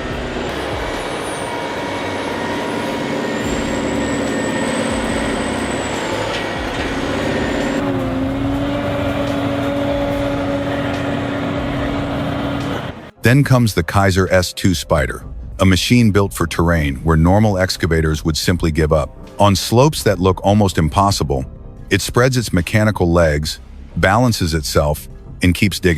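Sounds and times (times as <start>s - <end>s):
heavy machine engine running: 0.0s - 13.1s.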